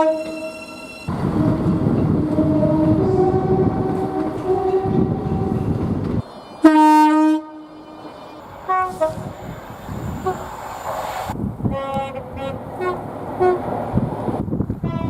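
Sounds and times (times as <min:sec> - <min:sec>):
train air horn: 0:00.0 - 0:05.9, 0:06.6 - 0:10.5, 0:11.7 - 0:13.7, 0:14.8 - 0:15.0
passing train rumble: 0:00.0 - 0:15.0.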